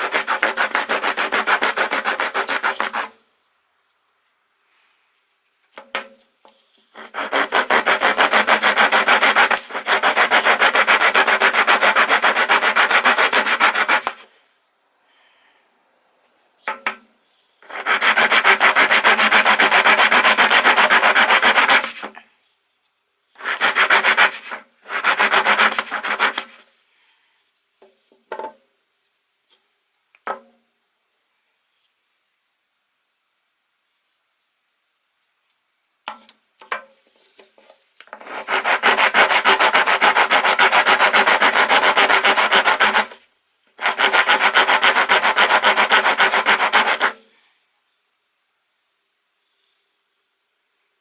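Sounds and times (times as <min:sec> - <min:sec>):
wood rasp scraping wood: 0:00.0 - 0:03.2, 0:06.9 - 0:14.3, 0:17.6 - 0:22.2, 0:23.4 - 0:26.7, 0:38.1 - 0:43.2, 0:43.8 - 0:47.3.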